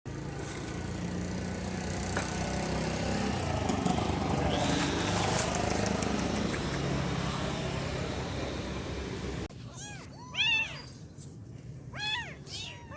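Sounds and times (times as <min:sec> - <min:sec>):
motor engine running: 0:00.1 - 0:09.5.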